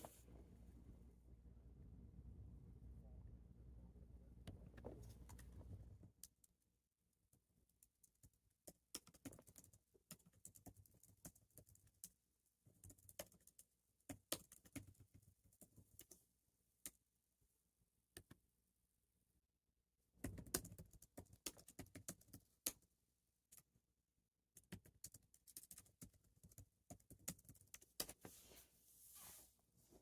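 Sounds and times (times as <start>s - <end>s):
low hum: 0.8s - 4.5s
faint irregular clicks and taps: 7.3s - 17.0s, 18.1s - 18.4s, 20.2s - 23.8s, 24.6s - 28.4s.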